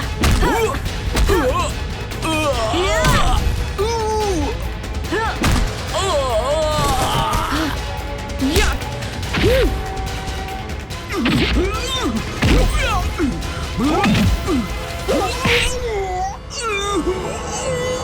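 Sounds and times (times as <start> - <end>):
background music: 0.0 - 18.0
fight whacks and crashes: 0.1 - 1.6, 3.0 - 3.6, 5.4 - 6.0, 6.8 - 7.6, 12.4 - 13.2.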